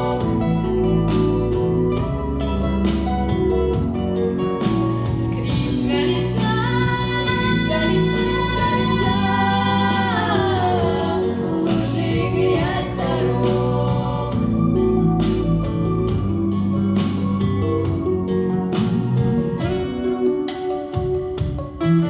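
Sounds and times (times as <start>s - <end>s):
instrumental accompaniment: 0.0s - 22.0s
girls singing together: 5.5s - 14.8s.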